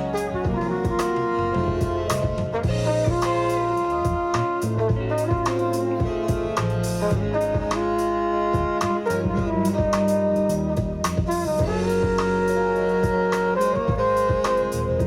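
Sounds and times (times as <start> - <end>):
jazz band over loudspeakers: 0.0 - 15.0.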